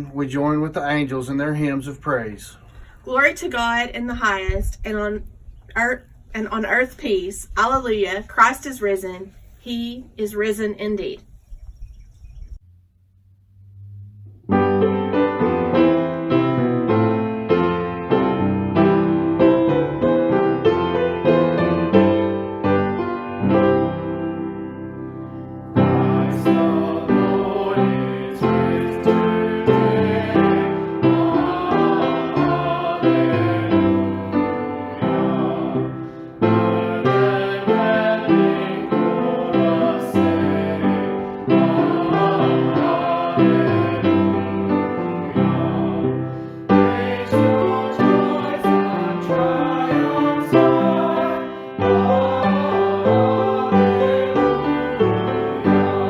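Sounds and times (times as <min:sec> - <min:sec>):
piano hymn: 0:13.6 - 0:56.0
people singing: 0:25.8 - 0:56.0.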